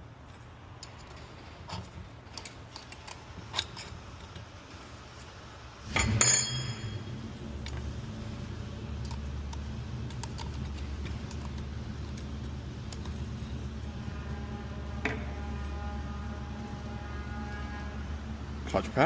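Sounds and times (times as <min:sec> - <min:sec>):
steady low hum: 0:00.0 - 0:19.0
metal parts clicking and clinking: 0:00.3 - 0:04.5, 0:08.9 - 0:13.9.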